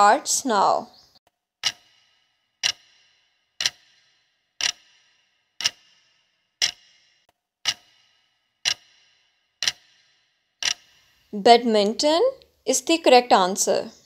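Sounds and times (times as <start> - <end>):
timer ticking: 1.6 - 12.6.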